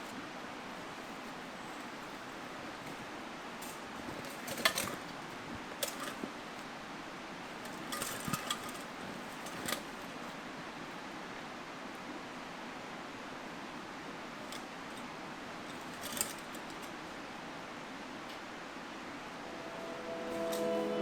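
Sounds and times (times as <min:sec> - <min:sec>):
small metal items clinking: 0:15.7 - 0:16.9.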